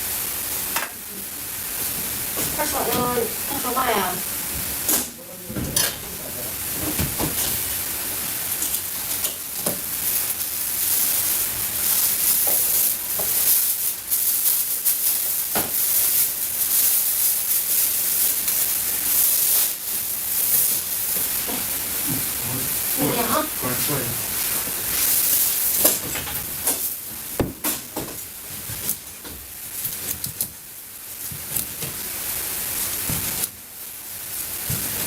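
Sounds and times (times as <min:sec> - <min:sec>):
food sizzling in a pan: 0:00.0 - 0:35.0.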